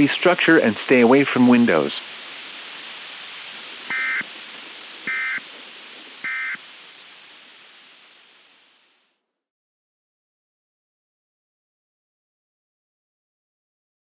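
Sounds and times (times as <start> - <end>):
static hiss: 0.0 - 9.3
data tone bursts: 3.9 - 4.3, 5.1 - 5.4, 6.2 - 6.6.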